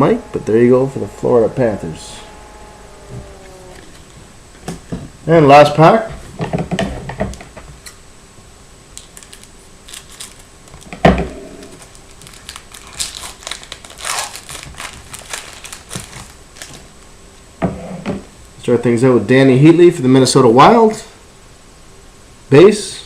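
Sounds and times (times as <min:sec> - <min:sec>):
wrapper crinkling and tearing: 0:09.0 - 0:11.0, 0:11.6 - 0:16.9.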